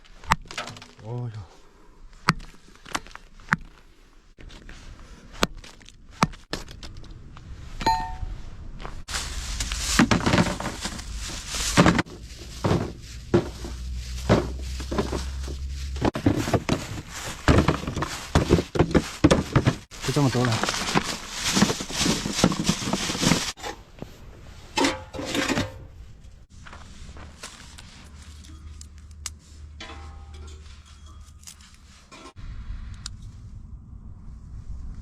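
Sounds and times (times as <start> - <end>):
ringing metallic clink: 7.9 - 8.3.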